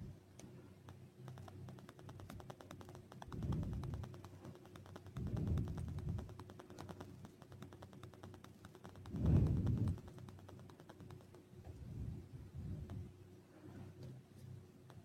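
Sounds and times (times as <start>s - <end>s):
faint steady hum: 0.0s - 15.0s
rapid faint clicks: 0.3s - 11.8s, 14.0s - 15.0s
handling noise rubbing bumps: 0.8s - 13.1s.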